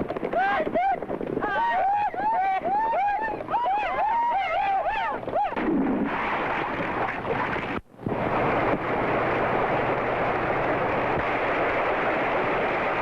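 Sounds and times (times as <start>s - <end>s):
steady rushing noise: 5.6s - 13.0s.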